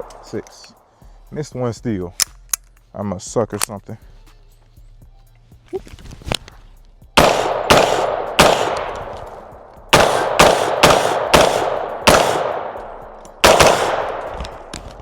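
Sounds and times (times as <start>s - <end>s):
gunshots with long echo: 7.2s - 15.0s.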